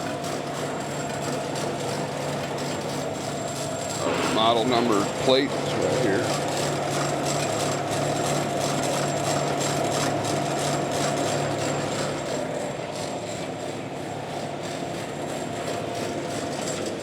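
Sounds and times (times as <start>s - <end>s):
machine drone: 3.2s - 14.4s.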